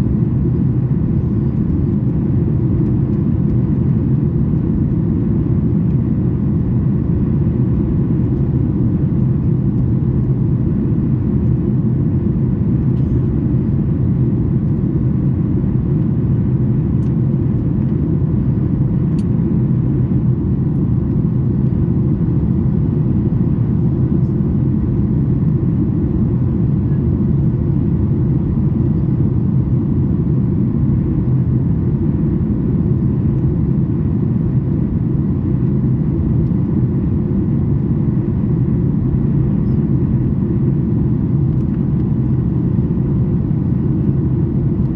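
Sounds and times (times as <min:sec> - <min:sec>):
airplane cabin roar: 0:00.0 - 0:44.9.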